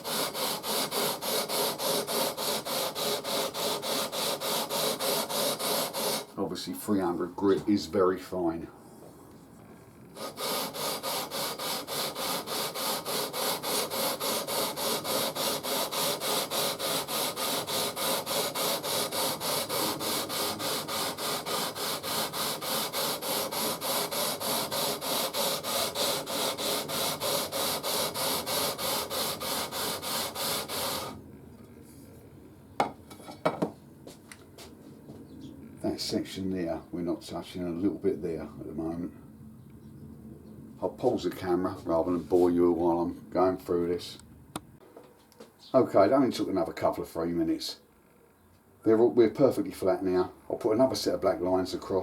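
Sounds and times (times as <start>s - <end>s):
sanding beam rasping on frets: 0.0s - 6.3s, 10.2s - 31.2s
light knocks: 32.8s - 33.8s.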